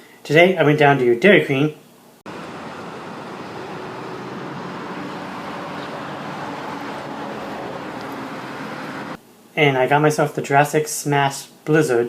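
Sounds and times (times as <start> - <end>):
faint low engine hum: 2.3 - 9.2
road hiss: 2.3 - 9.2.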